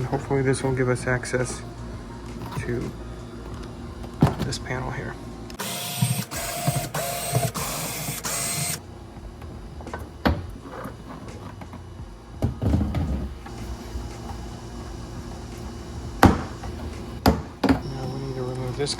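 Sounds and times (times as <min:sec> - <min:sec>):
cordless screwdriver whirring: 0:05.6 - 0:08.8.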